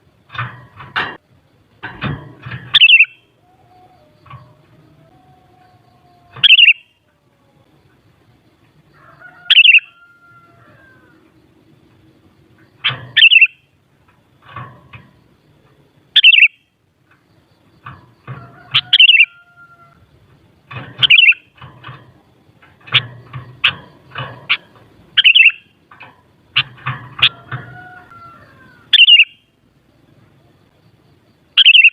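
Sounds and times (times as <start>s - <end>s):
bulbul calling: 2.6s - 7.0s, 9.4s - 10.0s, 12.5s - 13.7s, 16.1s - 16.7s, 17.8s - 19.5s, 20.7s - 21.6s, 22.8s - 29.5s, 31.6s - 31.9s
faint clicks and knocks: 13.9s - 16.0s, 17.0s - 18.7s.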